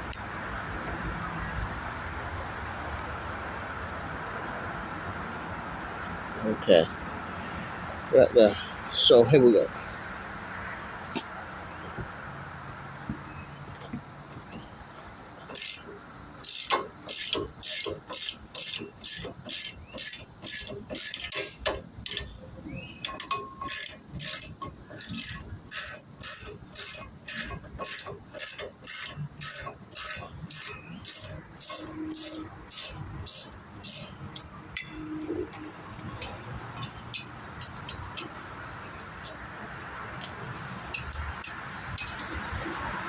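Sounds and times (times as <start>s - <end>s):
ratchet wrench clicking: 15.5s - 22.4s, 23.0s - 38.3s, 40.9s - 42.4s.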